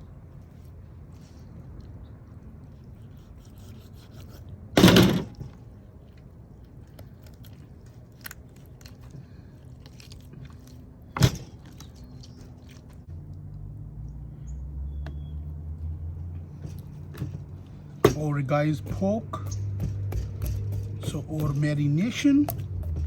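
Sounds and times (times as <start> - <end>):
knife cutting raw chicken: 2.7 - 4.6.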